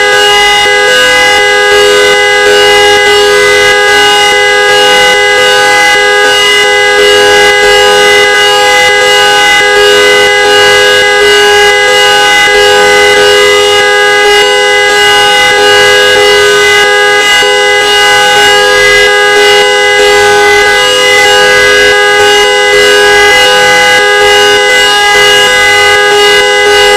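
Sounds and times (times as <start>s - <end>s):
car trumpet horn: 0.0s - 26.9s.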